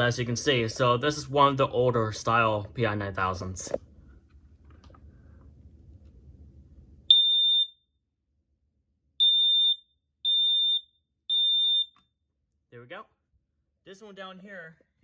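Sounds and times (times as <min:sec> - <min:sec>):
smoke alarm beeping: 0:07.1 - 0:07.9, 0:09.2 - 0:12.1.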